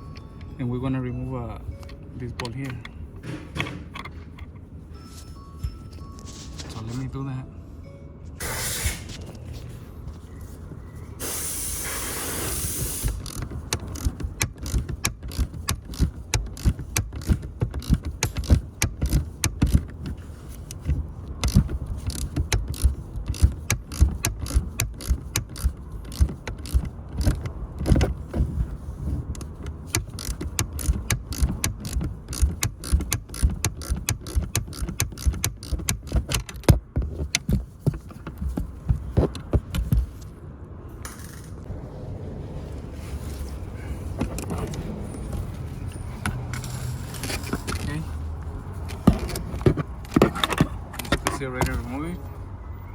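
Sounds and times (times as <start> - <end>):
short hiss: 8.4 - 9.1, 11.2 - 13.2
ratchet wrench clicking: 11.5 - 28.1, 29.3 - 36.8.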